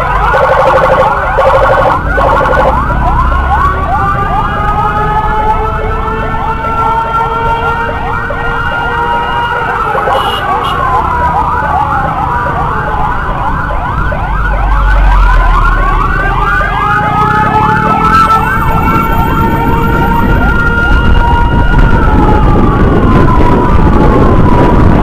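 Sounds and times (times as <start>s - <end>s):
siren wailing tone: 0.0s - 24.9s
siren yelp: 0.0s - 25.0s
vehicles rumbling: 0.0s - 25.0s
wind: 0.0s - 25.0s.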